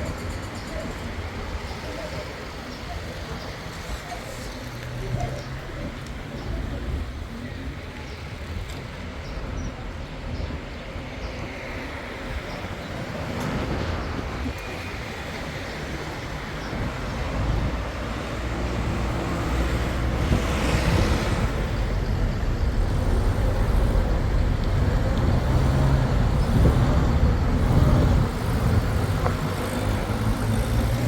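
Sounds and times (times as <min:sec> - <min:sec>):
vehicle engine and road rumble: 0:00.0 - 0:31.0.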